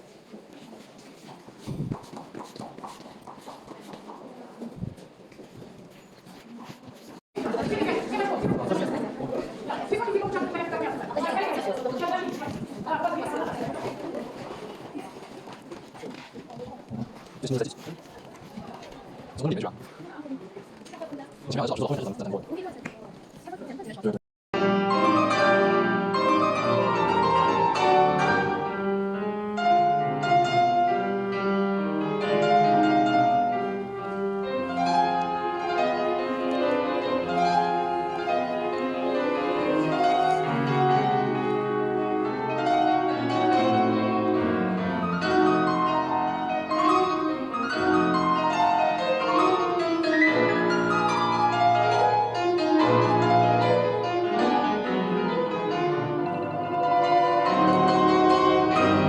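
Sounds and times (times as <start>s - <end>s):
piano duet classical music: 24.6s - 59.0s.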